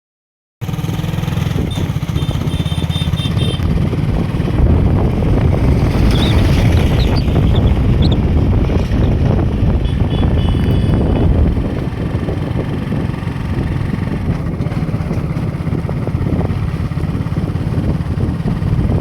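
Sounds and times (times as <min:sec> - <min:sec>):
small engine running: 0:00.6 - 0:04.5.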